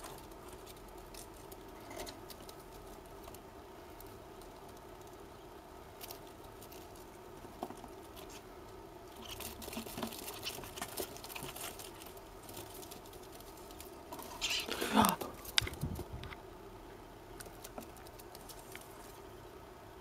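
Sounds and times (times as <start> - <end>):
steady hum: 0.0 - 20.0
light scratching and rustling clicks: 9.1 - 16.4.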